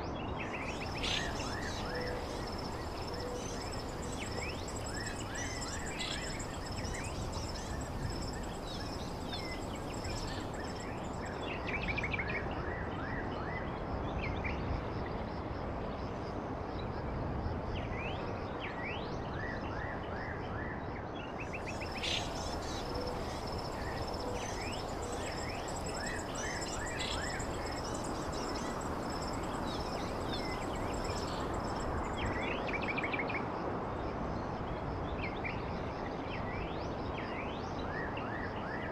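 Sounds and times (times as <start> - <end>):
background noise: 0.0 - 38.9
bird chirps: 0.6 - 11.1, 21.6 - 32.4.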